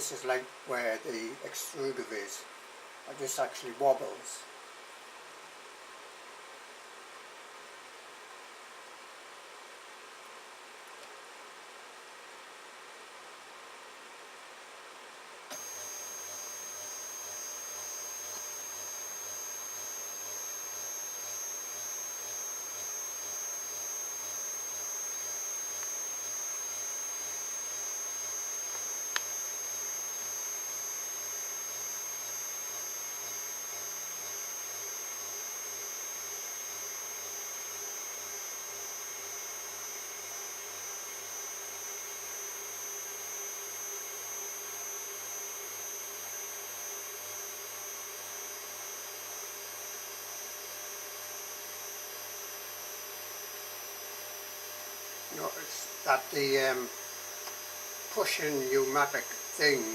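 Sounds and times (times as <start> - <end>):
stepper motors whining: 15.5 - 32.6.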